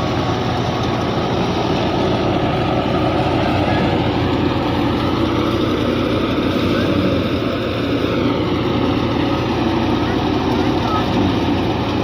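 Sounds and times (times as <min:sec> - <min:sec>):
heavy farm machinery running: 0:00.0 - 0:12.0.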